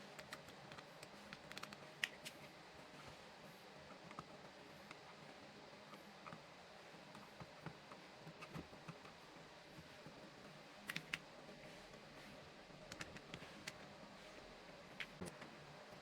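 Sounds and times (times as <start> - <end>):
faint clicks and handling: 0.1 - 2.5, 10.8 - 11.3, 12.8 - 15.6.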